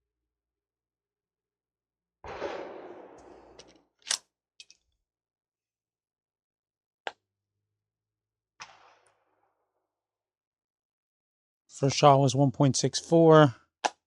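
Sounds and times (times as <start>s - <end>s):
pistol shot: 2.2s - 4.2s, 8.6s - 9.2s
magazine reload clicks: 3.3s - 4.8s.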